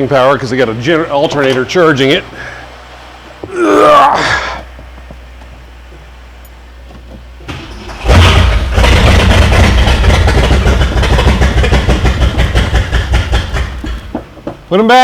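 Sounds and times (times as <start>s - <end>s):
loud uneven engine running: 2.0s - 14.6s
engine starter turning over: 7.5s - 14.2s.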